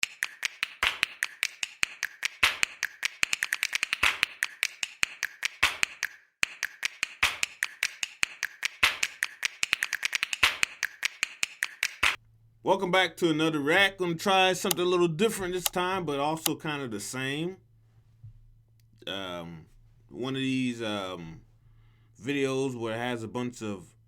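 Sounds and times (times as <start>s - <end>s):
rhythmic sharp clicks and taps: 0.0s - 12.4s, 14.6s - 16.6s.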